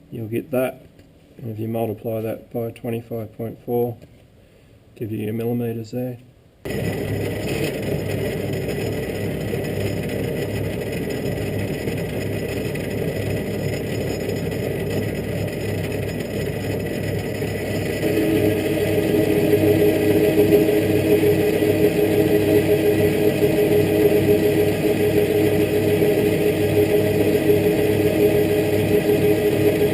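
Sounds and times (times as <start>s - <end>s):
metal lathe humming and whirring: 6.7s - 29.9s.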